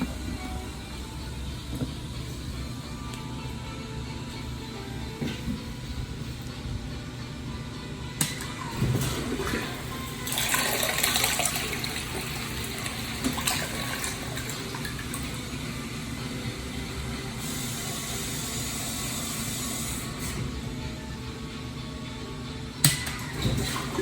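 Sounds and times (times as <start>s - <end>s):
toilet flushing: 0.0s - 1.0s, 8.2s - 20.9s, 22.8s - 24.0s
water running as tank refills: 8.2s - 20.6s, 22.8s - 24.0s.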